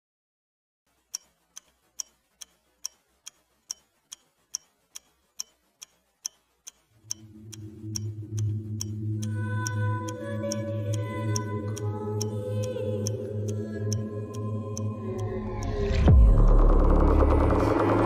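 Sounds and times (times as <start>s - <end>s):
clock ticking: 0.9s - 16.1s
low droning tone: 7.0s - 18.0s.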